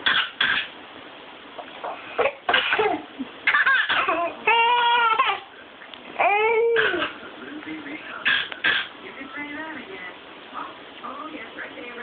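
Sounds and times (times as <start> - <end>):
person fake coughing: 2.2 - 4.2, 6.8 - 7.2.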